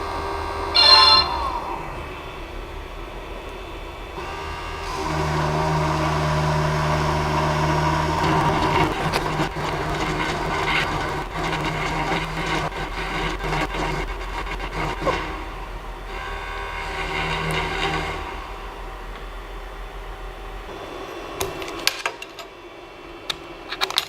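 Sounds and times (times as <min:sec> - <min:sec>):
spindle motor hum: 0:00.0 - 0:21.7
engraving bit scraping and ticking: 0:08.1 - 0:15.2, 0:16.8 - 0:18.5.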